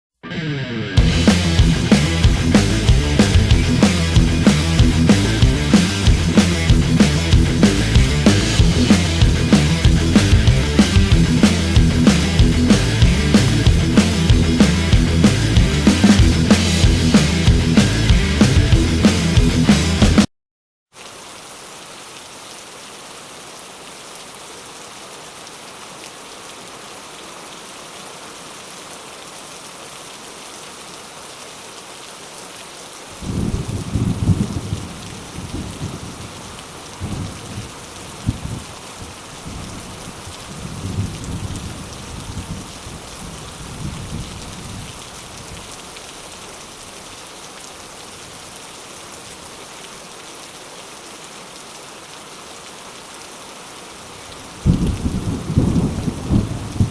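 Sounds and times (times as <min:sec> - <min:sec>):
steady rain hissing: 0:01.0 - 0:20.0, 0:21.0 - 0:56.9
rolling thunder clap: 0:01.0 - 0:20.3, 0:33.2 - 0:36.3, 0:54.6 - 0:56.9.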